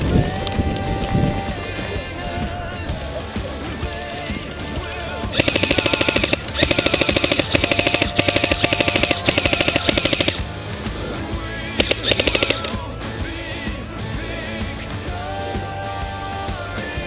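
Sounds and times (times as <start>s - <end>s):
background music: 0.0s - 17.0s
airsoft gun firing bursts: 5.3s - 10.5s, 11.8s - 12.9s.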